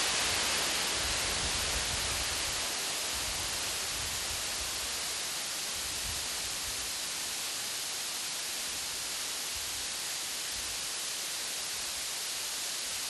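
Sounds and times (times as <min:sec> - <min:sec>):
waterfall rushing: 0:00.0 - 0:09.3.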